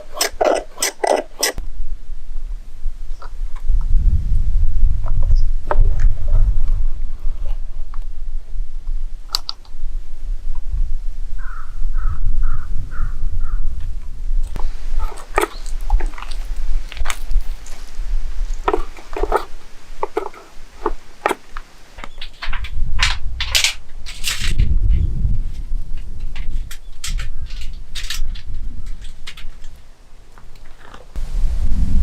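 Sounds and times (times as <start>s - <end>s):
sharp clicks and crackles: 9.3s - 9.8s
bird calling: 15.0s - 16.5s.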